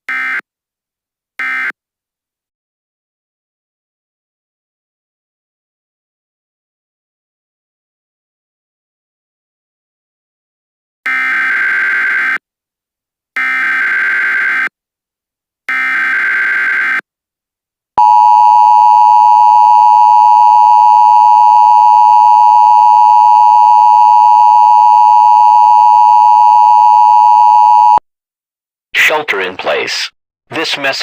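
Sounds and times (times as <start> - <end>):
long steady attention tone: 18.0 - 28.0.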